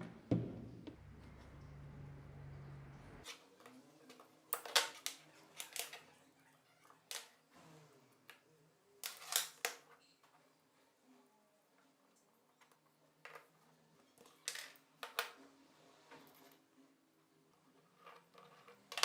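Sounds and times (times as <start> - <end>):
low hum: 0.0 - 3.2.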